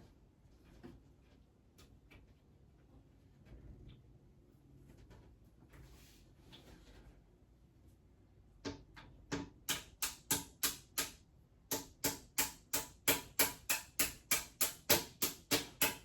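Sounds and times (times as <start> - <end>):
hammer tapping: 8.6 - 16.0.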